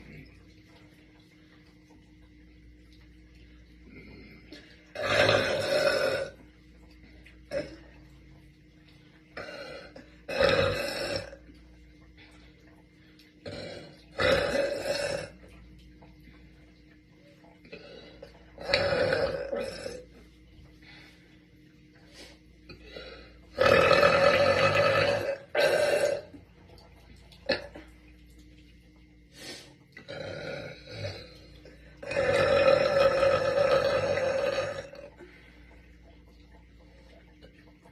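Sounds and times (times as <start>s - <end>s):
woman burping: 4.9s - 6.4s, 13.4s - 15.4s.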